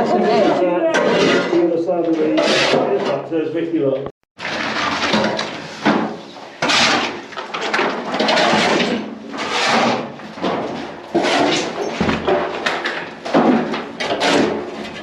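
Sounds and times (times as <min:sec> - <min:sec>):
rough scraping and grating: 0:00.0 - 0:03.2, 0:06.5 - 0:12.2, 0:14.0 - 0:15.0.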